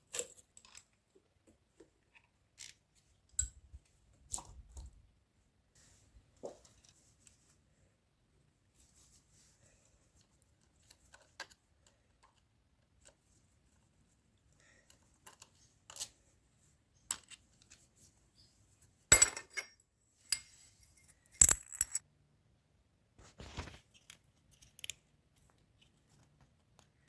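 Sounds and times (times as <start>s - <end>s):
metal parts clicking and clinking: 19.1s - 22.0s.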